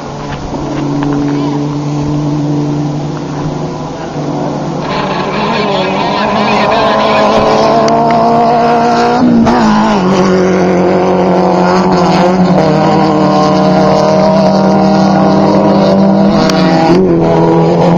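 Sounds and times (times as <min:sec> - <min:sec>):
buggy engine running hard: 0:00.0 - 0:17.9.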